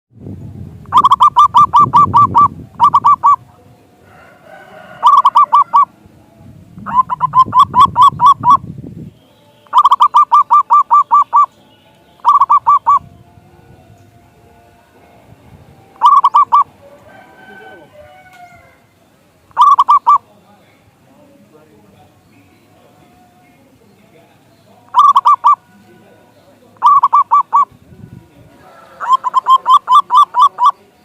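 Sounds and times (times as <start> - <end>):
dove cooing: 0.9 - 6.0, 6.8 - 8.7, 9.6 - 11.5, 12.2 - 13.1, 16.0 - 18.8, 19.5 - 20.3, 24.9 - 25.7, 26.8 - 27.7, 28.6 - 31.0.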